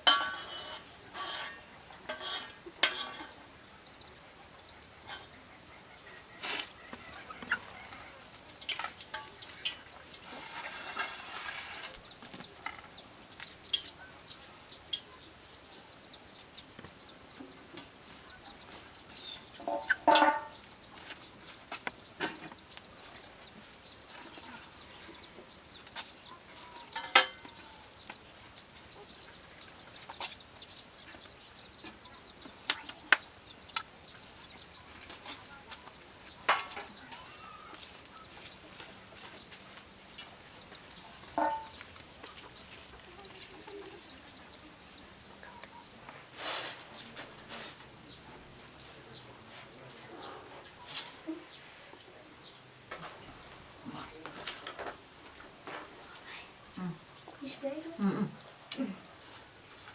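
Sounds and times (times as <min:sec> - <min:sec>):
chickens clucking: 0:00.0 - 0:59.9.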